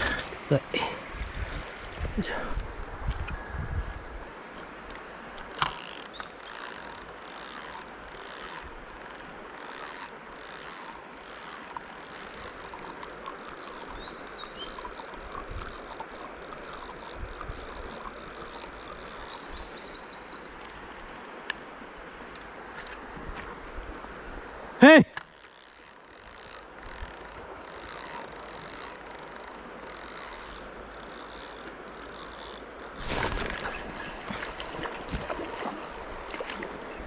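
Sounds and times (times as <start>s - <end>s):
mountain stream rushing: 0.0s - 37.0s
fishing reel clicking: 5.5s - 19.4s, 25.2s - 33.0s.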